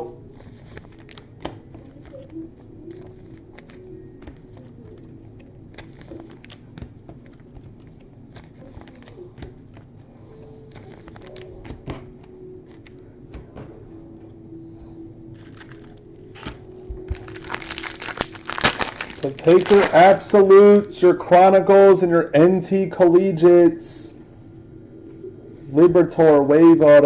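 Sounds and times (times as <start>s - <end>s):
wrapper crinkling: 0.3s - 7.5s, 8.3s - 10.0s, 10.7s - 11.7s, 15.3s - 21.0s
cards clicking and tapping: 0.4s - 10.0s, 10.7s - 13.7s.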